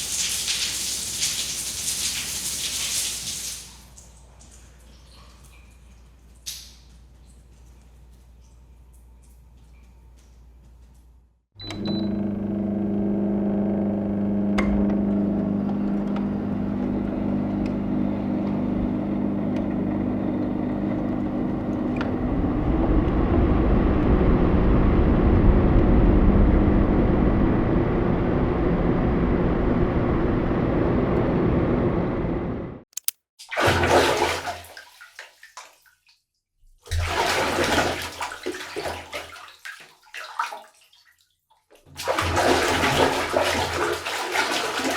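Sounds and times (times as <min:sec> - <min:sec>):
water running: 0:00.0 - 0:09.9, 0:36.9 - 0:44.9
low hum: 0:11.6 - 0:32.8.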